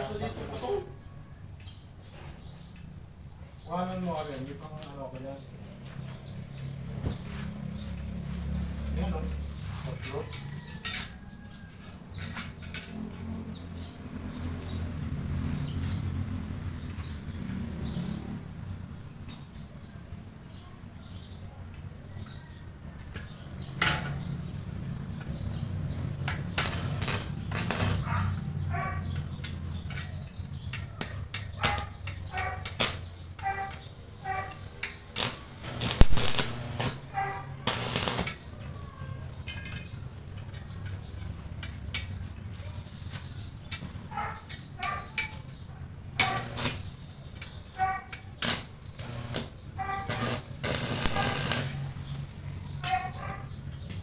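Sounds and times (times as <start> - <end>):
metal tools clinking: 26.3 - 28.2, 34.6 - 42.1, 48.4 - 53.4.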